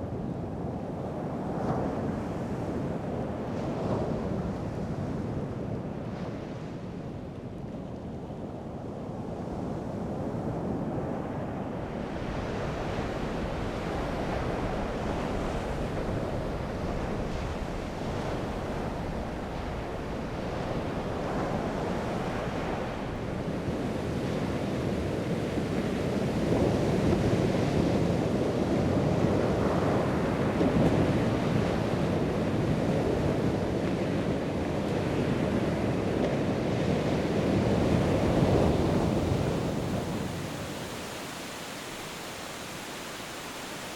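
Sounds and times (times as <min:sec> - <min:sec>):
wind: 0:00.0 - 0:43.9
waves washing in: 0:29.2 - 0:43.9.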